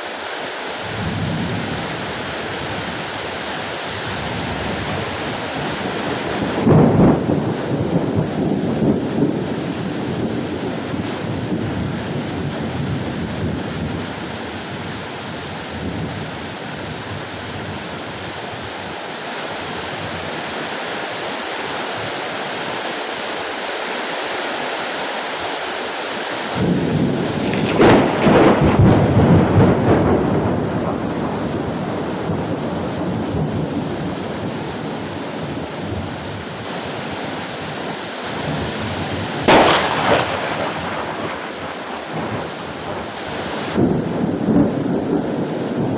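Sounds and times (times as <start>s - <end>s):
heavy rain falling: 0.0s - 45.9s
thunder rumbling: 0.8s - 18.7s, 26.5s - 45.9s
sharp thunder crack: 0.9s - 14.1s, 26.6s - 34.2s, 39.4s - 45.9s.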